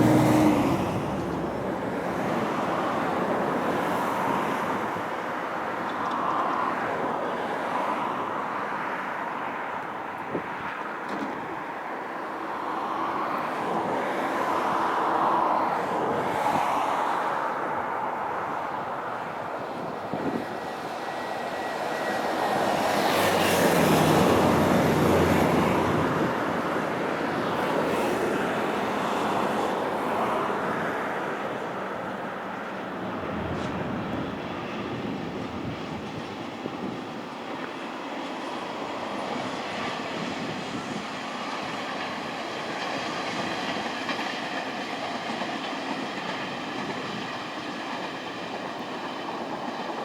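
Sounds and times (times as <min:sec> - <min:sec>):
train wheels on rails: 0:00.0 - 0:50.0
locomotive engine hum: 0:17.0 - 0:50.0.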